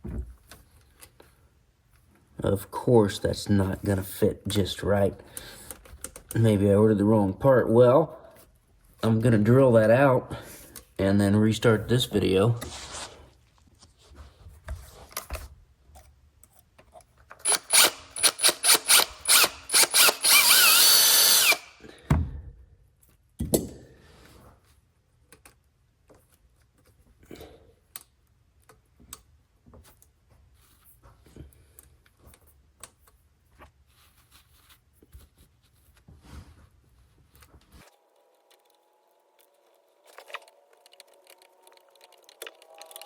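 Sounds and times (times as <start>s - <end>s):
electric power drill: 17.4s - 21.8s.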